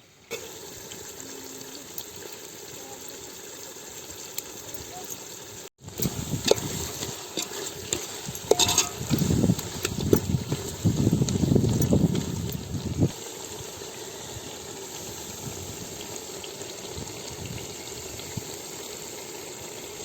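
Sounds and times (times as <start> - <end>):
chicken frying in a pot: 0.0 - 20.0
ladle scraping and clinking pot: 5.9 - 10.8.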